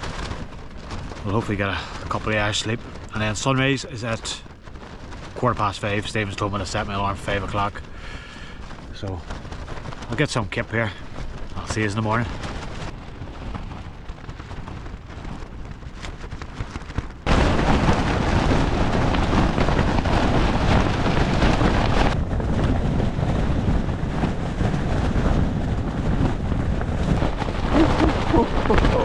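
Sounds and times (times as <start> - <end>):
strong wind gusting against tent: 0.0 - 29.0
breeze: 27.2 - 29.0.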